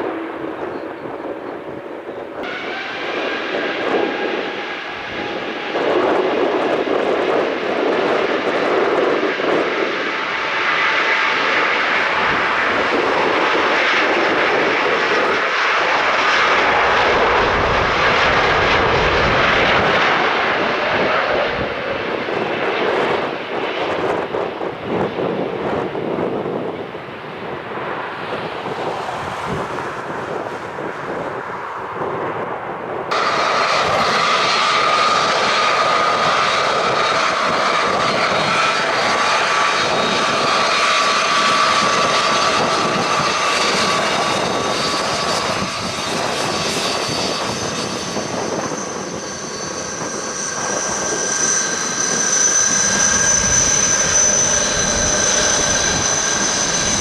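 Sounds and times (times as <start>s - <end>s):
high-pitched whine: 0.0s - 6.4s, 26.6s - 57.0s
jet engines roaring: 0.0s - 57.0s.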